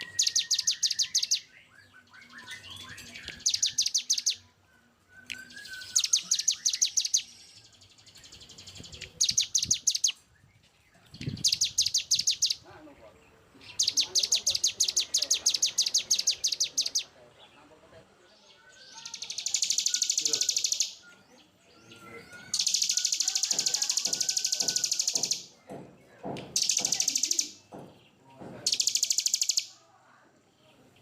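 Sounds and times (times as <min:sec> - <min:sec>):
songbird singing rapid high notes: 0:00.0 - 0:04.6, 0:05.2 - 0:10.2, 0:11.1 - 0:12.8, 0:13.6 - 0:17.4, 0:18.4 - 0:25.6, 0:26.5 - 0:27.8, 0:28.6 - 0:29.8.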